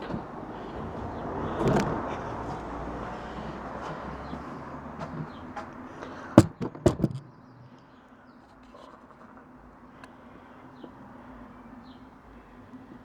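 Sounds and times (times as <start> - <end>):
sharp clicks and knocks: 1.5 - 2.7, 5.0 - 7.8.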